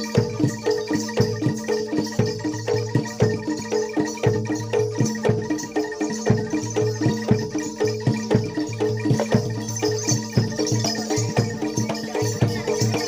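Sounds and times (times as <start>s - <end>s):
hand-drum strokes: 0.0s - 13.0s
jingling percussion: 0.0s - 13.0s
struck metal keyed instruments: 0.0s - 13.0s.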